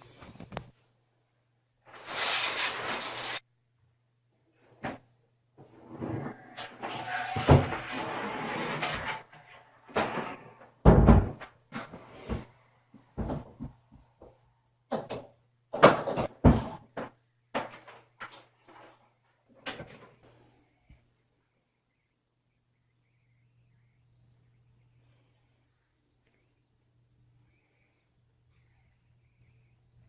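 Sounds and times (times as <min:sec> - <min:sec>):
rustling and scraping: 0:01.9 - 0:03.4.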